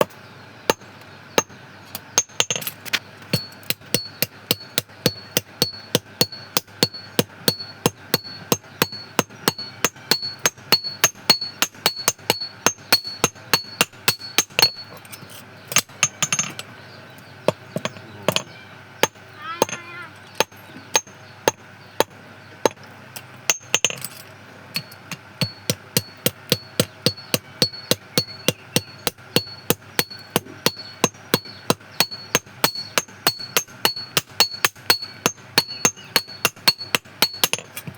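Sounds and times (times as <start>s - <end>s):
hammer striking metal on anvil: 3.3s - 15.0s, 15.7s - 16.6s, 17.5s - 22.8s, 23.5s - 24.2s, 24.8s - 37.9s.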